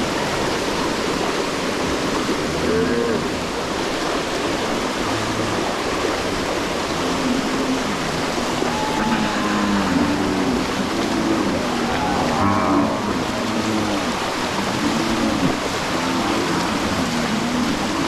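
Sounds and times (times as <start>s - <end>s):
cattle splashing through water: 0.0s - 18.0s
low cattle calls: 4.9s - 6.2s, 6.9s - 18.0s.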